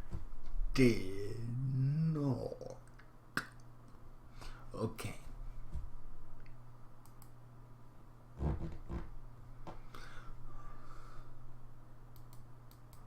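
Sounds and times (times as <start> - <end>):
steady low hum: 0.0 - 13.0
computer clicks: 12.1 - 13.0.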